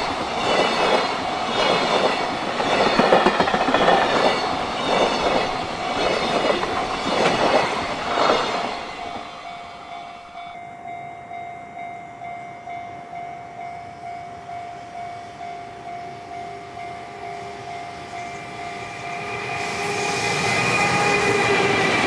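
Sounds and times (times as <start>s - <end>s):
train wheels clattering over rail joints: 0.0s - 9.4s
level crossing warning bell: 0.0s - 19.8s.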